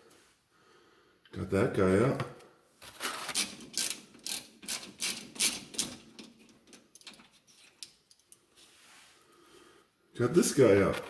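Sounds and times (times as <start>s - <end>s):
hand ratchet clicking: 3.4s - 7.2s.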